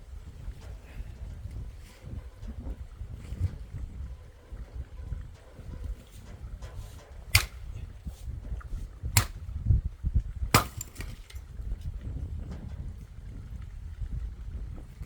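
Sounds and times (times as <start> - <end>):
low wind rumble: 0.0 - 15.0
axe splitting firewood: 7.3 - 7.8, 9.2 - 9.5, 10.5 - 11.4.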